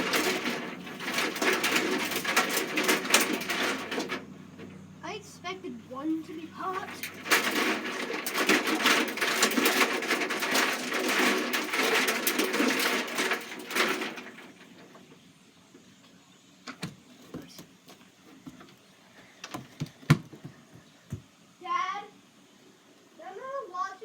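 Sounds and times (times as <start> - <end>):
washing machine drum rattling: 0.0 - 4.9, 6.0 - 15.1.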